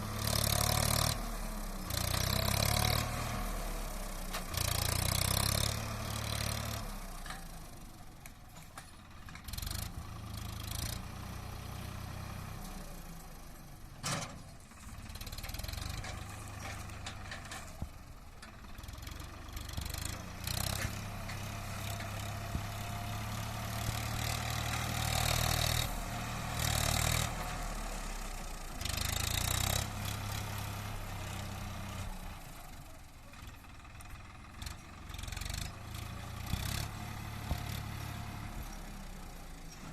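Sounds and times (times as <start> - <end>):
tractor diesel engine running: 0.0 - 39.9.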